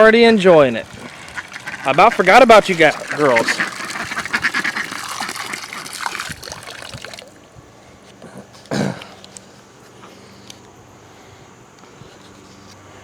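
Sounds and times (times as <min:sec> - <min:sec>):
water pouring: 0:00.0 - 0:07.5.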